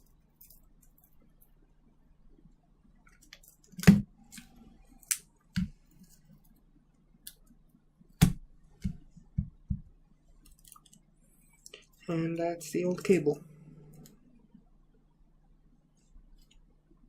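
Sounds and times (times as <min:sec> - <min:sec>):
small parts clicking and knocking: 0:00.0 - 0:01.5.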